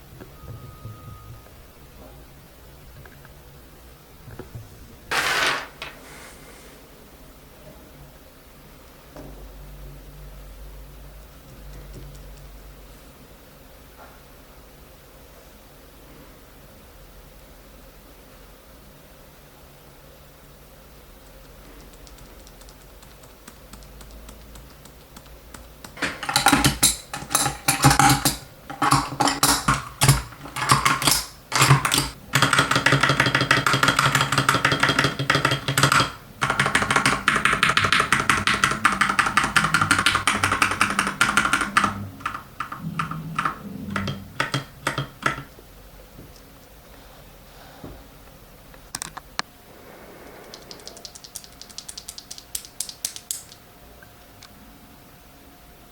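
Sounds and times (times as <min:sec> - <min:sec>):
mechanical keyboard typing: 0:21.2 - 0:45.5, 0:50.5 - 0:53.6.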